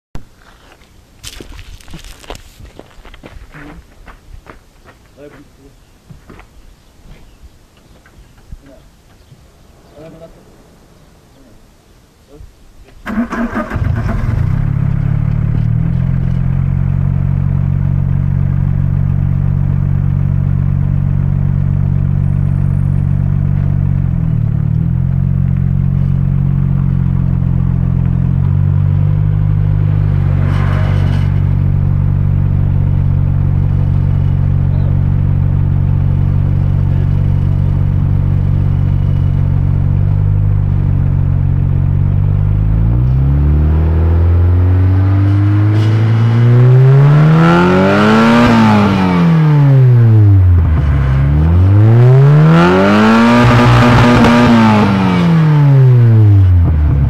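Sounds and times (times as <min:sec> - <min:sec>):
car exhaust idling: 0:13.1 - 0:43.2, 0:55.6 - 0:57.0.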